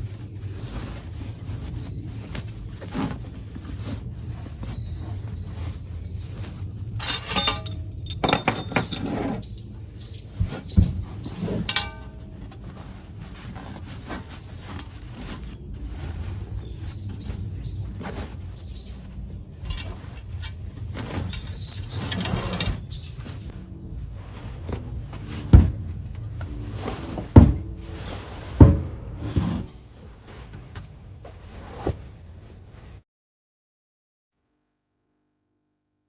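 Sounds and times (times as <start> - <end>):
small birds chirping: 16.5 - 19.5, 21.2 - 23.5.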